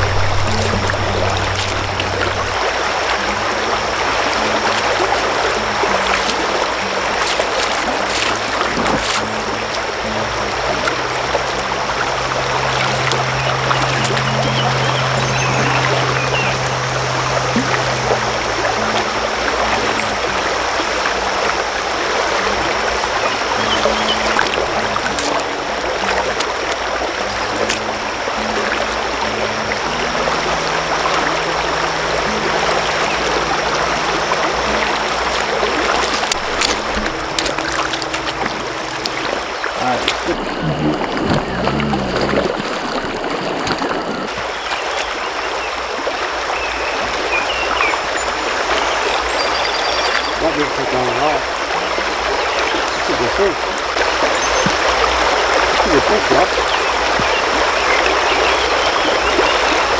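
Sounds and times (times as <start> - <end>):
low background music: 0.0 - 40.4
creek water flowing: 0.0 - 59.9.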